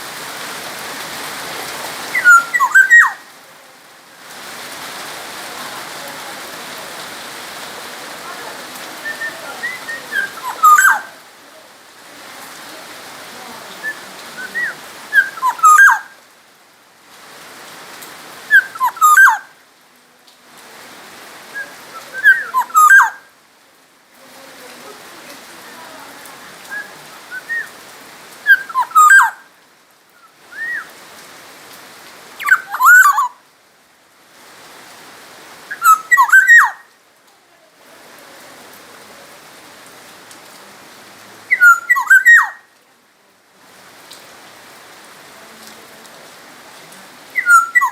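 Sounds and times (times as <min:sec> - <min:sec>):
bird singing fluty whistles: 0:02.2 - 0:03.2, 0:09.0 - 0:11.0, 0:13.8 - 0:16.0, 0:18.5 - 0:19.4, 0:21.6 - 0:23.1, 0:26.7 - 0:27.7, 0:28.5 - 0:29.3, 0:30.5 - 0:30.9, 0:32.4 - 0:33.2, 0:35.7 - 0:36.7, 0:41.5 - 0:42.6, 0:47.4 - 0:47.9.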